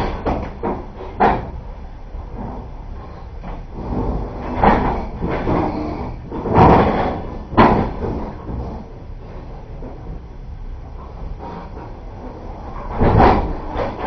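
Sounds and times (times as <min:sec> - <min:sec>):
train carriage rumble: 0:00.0 - 0:14.0
loud clunks: 0:03.6 - 0:08.7, 0:12.8 - 0:14.0.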